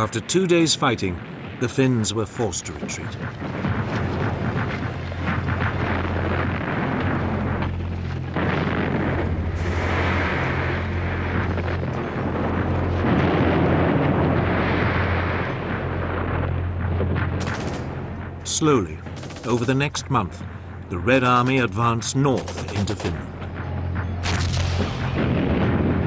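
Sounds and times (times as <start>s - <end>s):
rumbling explosions: 0.0s - 26.0s
low drone: 3.0s - 26.0s
artillery fire: 8.3s - 15.5s, 17.0s - 18.0s, 24.2s - 26.0s.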